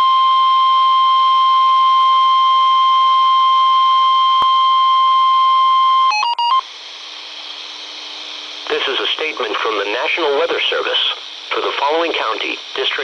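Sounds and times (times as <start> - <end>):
weather radio alarm tone: 0.0 - 6.6
radio hiss: 6.6 - 13.0.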